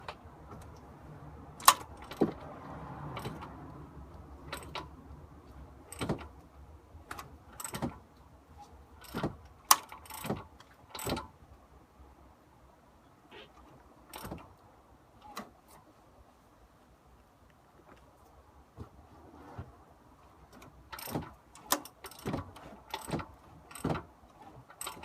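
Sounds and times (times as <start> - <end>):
metal parts clicking and clanking: 1.6 - 2.4, 3.1 - 3.6, 4.4 - 11.4, 20.5 - 25.0.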